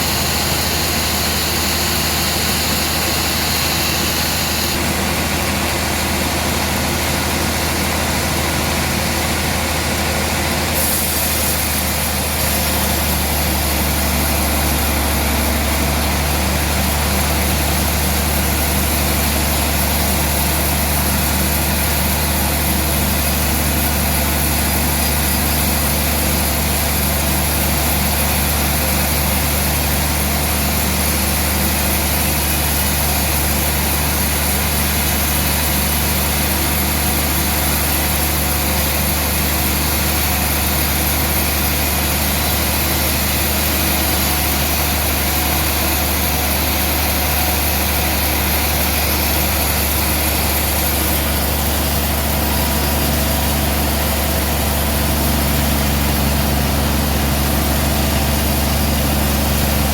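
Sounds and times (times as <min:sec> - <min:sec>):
large engine humming: 0:00.0 - 0:59.9.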